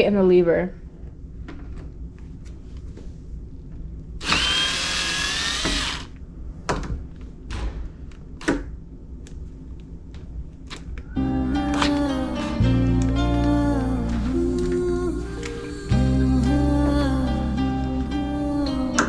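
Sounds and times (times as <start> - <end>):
cordless drill motor whine: 4.2 - 6.1.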